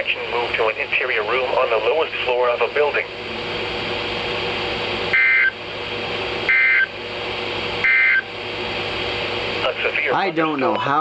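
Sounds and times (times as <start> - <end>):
radio static hiss: 9.6 - 10.4.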